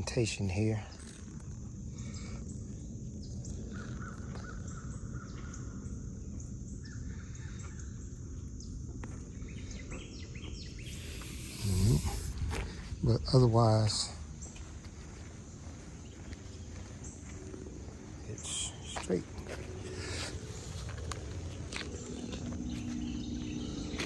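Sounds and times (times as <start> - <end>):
faint birds calling: 0.5 - 24.0
brief burst of noise: 10.8 - 12.8.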